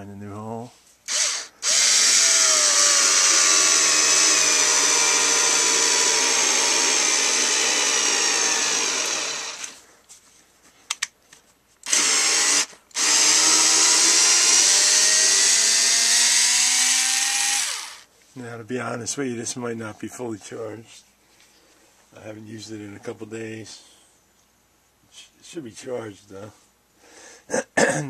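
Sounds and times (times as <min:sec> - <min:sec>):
cordless screwdriver motor whining: 0:01.1 - 0:09.8, 0:11.9 - 0:18.0.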